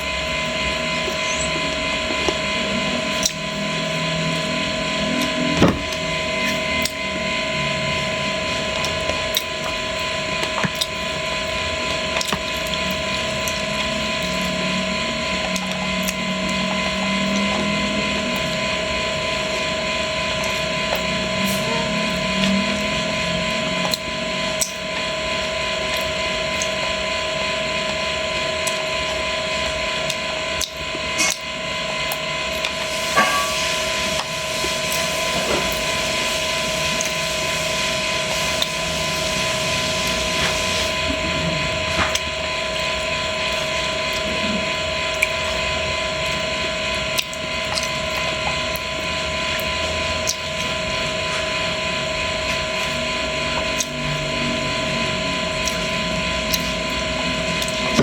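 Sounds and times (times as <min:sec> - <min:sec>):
steady whining hum: 0:00.0 - 0:58.0.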